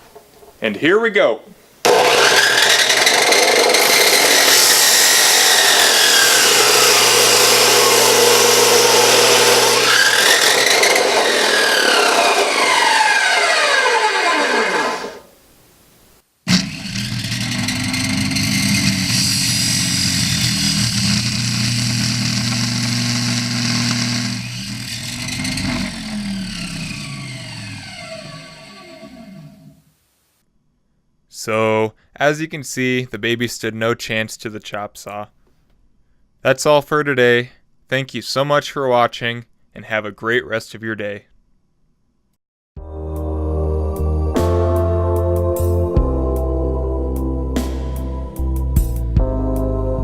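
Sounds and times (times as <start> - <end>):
electric chop saw cutting: 1.8 - 15.3, 16.5 - 29.8.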